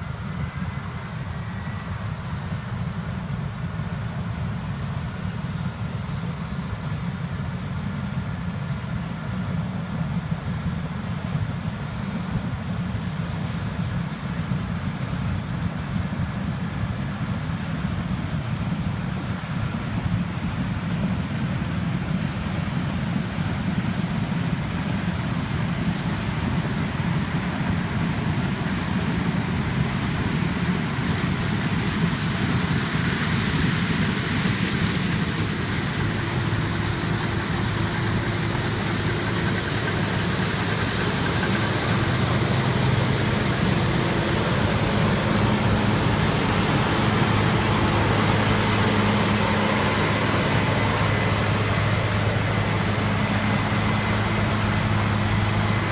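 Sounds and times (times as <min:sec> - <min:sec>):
combine harvester drone: 0:00.0 - 0:55.9
steady low hum: 0:17.9 - 0:55.9.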